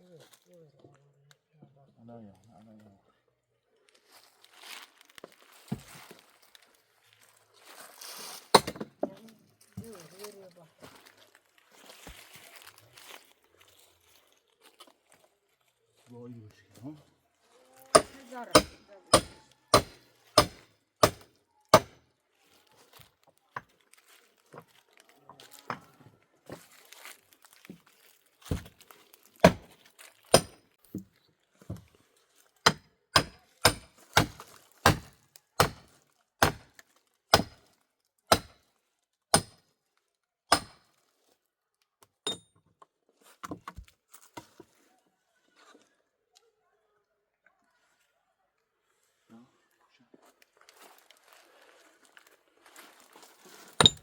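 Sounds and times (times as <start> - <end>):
twigs crackling and snapping: 3.8 - 7.9, 22.5 - 25.6, 26.6 - 30.9
chopping strikes on wood: 8.5 - 9.1, 17.9 - 22.0, 29.4 - 29.7, 30.3 - 30.6, 32.6 - 37.7, 38.3 - 38.6, 39.3 - 39.6, 40.5 - 40.8, 53.8 - 54.0.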